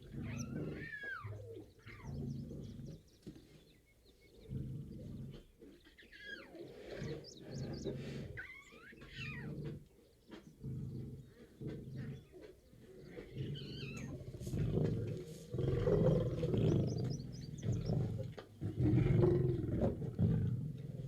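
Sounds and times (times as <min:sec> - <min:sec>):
lion grunting calls: 0:00.0 - 0:03.1, 0:04.4 - 0:21.0
birds chirping and whistling: 0:05.8 - 0:09.5, 0:13.0 - 0:14.2, 0:16.3 - 0:18.1.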